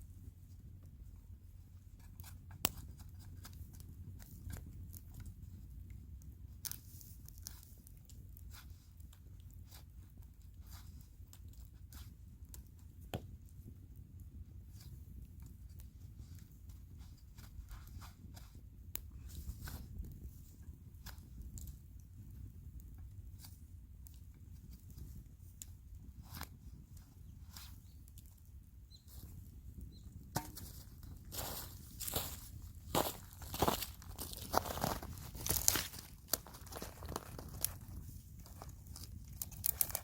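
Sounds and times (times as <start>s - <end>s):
dry wood cracking and snapping: 6.2s - 9.6s, 33.3s - 40.0s.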